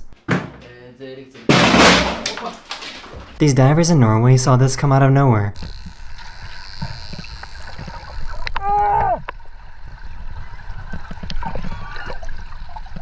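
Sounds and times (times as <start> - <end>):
underwater rumble with bubbling: 5.7 - 13.0.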